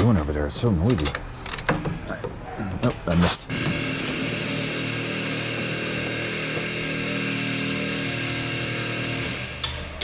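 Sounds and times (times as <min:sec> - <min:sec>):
loud machine with held tones: 0:03.5 - 0:09.7.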